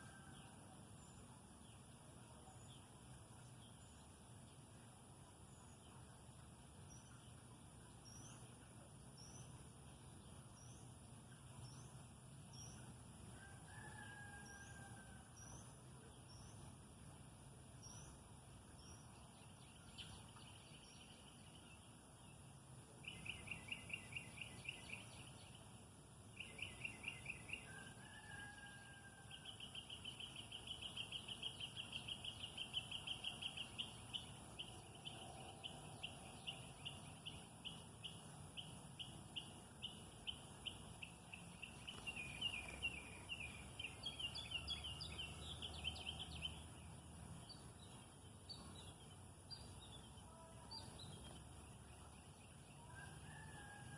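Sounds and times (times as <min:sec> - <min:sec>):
faint low hum: 0:00.0 - 0:53.9
birds chirping: 0:26.4 - 0:52.7.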